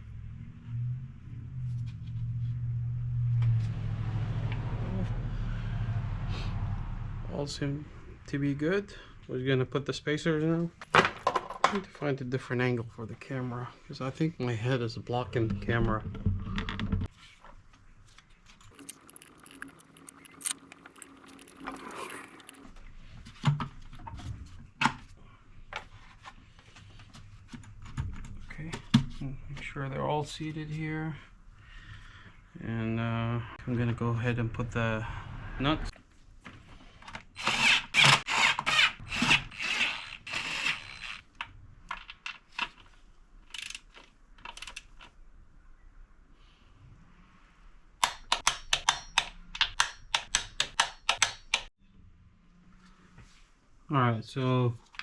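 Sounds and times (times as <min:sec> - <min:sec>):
small parts clicking and rattling: 0:18.7 - 0:22.7.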